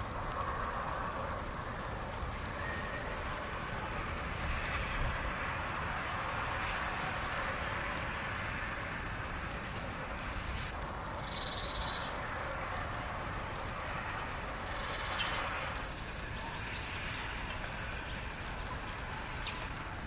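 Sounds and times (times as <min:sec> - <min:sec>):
outdoor ambience hiss: 0:00.0 - 0:20.0
small bird trill: 0:11.2 - 0:12.1.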